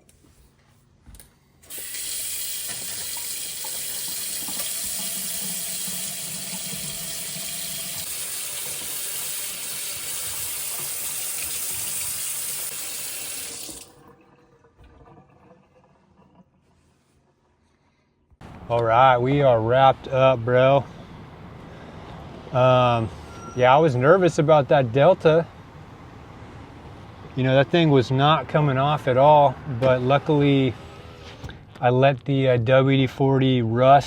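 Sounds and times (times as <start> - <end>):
water running from faucet: 1.7 - 14.0.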